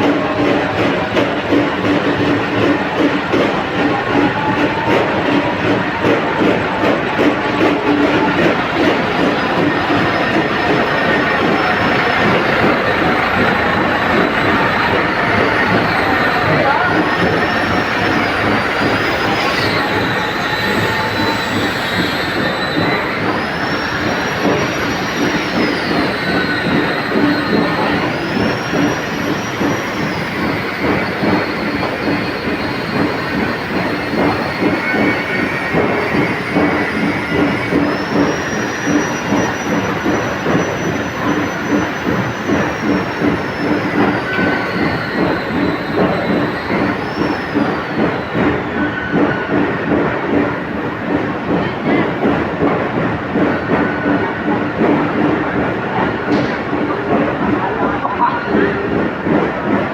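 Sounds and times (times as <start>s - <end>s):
high machine whine: 0.4s - 49.6s.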